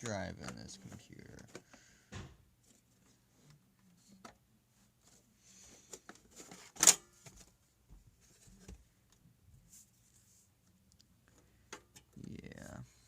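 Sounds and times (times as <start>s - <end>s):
clicks and rustling of parts: 5.9s - 7.5s.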